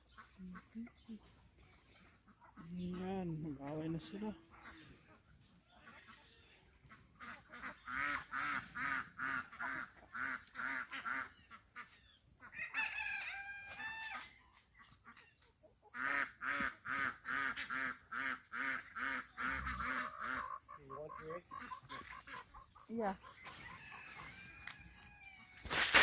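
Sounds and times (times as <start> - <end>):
chickens clucking: 0.0 - 26.0
rooster crowing: 12.6 - 14.2.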